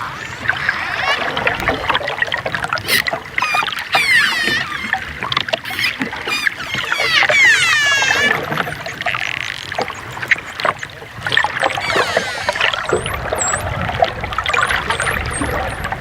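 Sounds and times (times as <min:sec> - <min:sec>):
dolphin squeal: 0:00.0 - 0:02.0, 0:02.8 - 0:13.7, 0:14.5 - 0:16.0
dolphins clicking: 0:00.0 - 0:16.0
water noise: 0:00.0 - 0:16.0
dolphin high whistles: 0:02.8 - 0:10.9, 0:11.6 - 0:13.7, 0:14.5 - 0:16.0.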